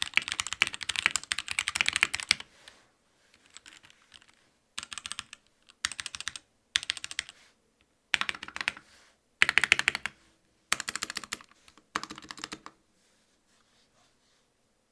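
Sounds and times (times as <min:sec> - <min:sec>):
mechanical keyboard typing: 0:00.0 - 0:02.4, 0:03.4 - 0:07.3, 0:08.1 - 0:08.8, 0:09.4 - 0:12.8.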